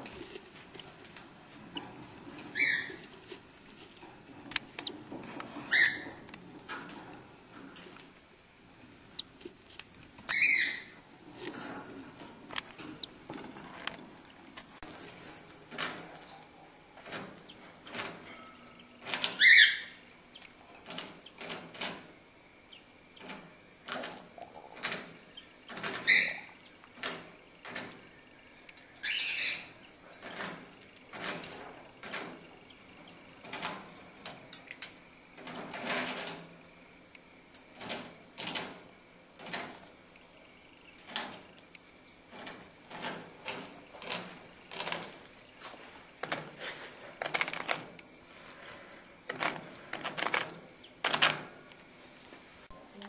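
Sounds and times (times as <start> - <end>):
bird calls: 2.5 - 3.0, 10.3 - 11.0, 18.8 - 20.5, 25.3 - 26.8, 29.0 - 30.0
scratching in nesting material: 42.3 - 51.4.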